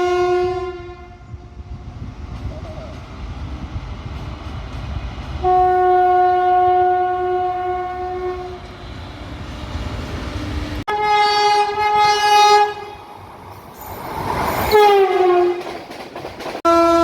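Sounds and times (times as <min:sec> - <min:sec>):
train horn blast: 0:00.0 - 0:01.4, 0:05.4 - 0:08.8, 0:10.9 - 0:13.1, 0:14.7 - 0:15.8, 0:16.6 - 0:17.0
low rumble of running train: 0:00.0 - 0:17.0.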